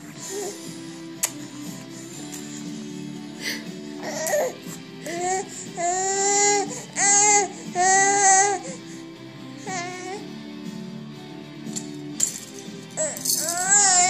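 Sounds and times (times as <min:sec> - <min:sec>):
baby crying calls: 0:13.0 - 0:14.0.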